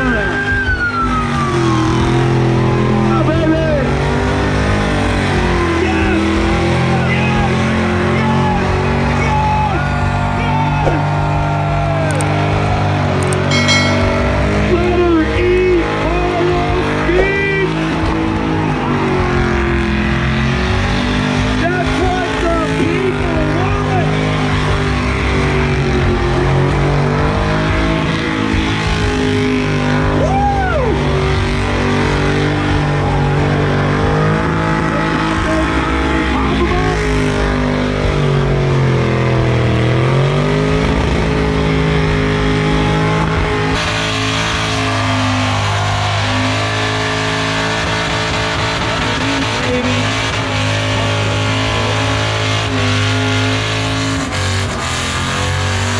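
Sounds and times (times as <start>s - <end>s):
car engines running: 0.0s - 55.9s
people's voices: 5.6s - 20.4s, 32.8s - 38.6s, 43.9s - 53.8s.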